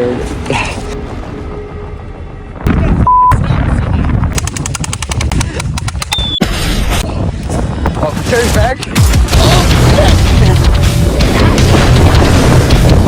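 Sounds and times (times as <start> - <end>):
short beep: 3.0 - 3.4.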